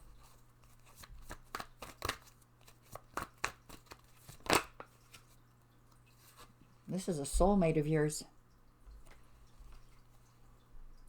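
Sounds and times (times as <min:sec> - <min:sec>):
cards snapping and slapping: 0:00.8 - 0:05.2.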